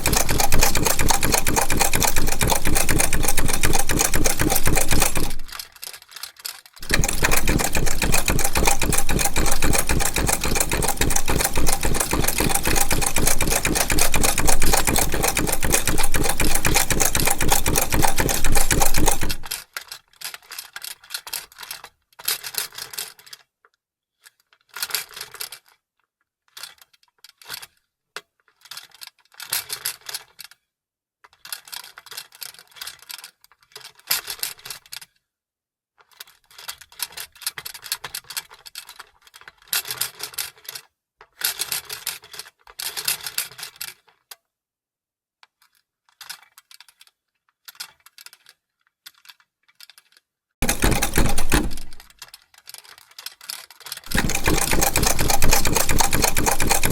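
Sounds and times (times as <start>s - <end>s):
sewing machine stitching: 0.0s - 5.6s, 6.8s - 19.6s, 50.6s - 52.2s, 54.0s - 56.9s
clicking and rattling bursts: 0.0s - 5.7s, 6.8s - 19.6s, 50.6s - 52.3s, 54.0s - 56.9s.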